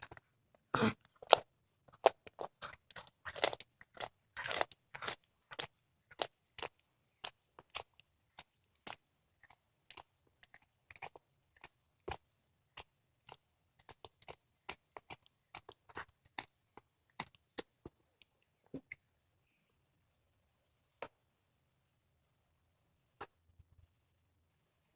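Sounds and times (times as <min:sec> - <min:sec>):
cat chewing crunches: 0:01.1 - 0:17.8.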